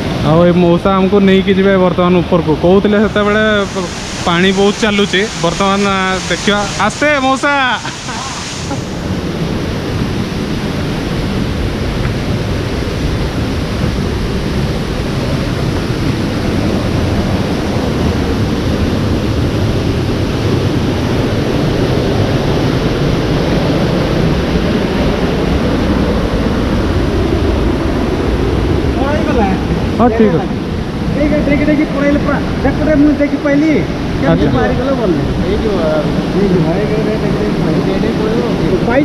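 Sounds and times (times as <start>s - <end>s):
fast-flowing stream rushing: 1.6s - 26.3s.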